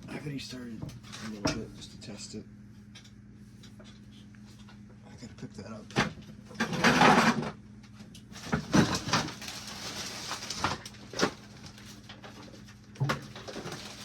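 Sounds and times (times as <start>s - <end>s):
faint steady hum: 0.0s - 14.0s
rustling scrape: 8.4s - 12.6s.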